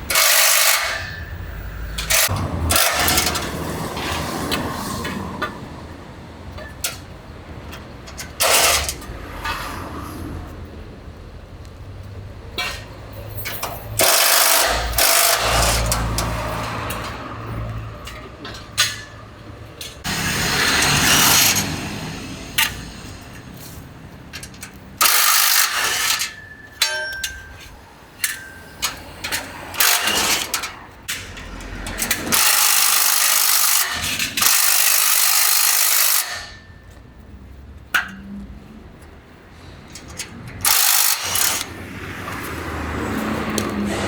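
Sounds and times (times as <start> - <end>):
power tool running: 20.1 - 23.6, 25.0 - 26.3, 32.3 - 36.6, 40.6 - 41.7.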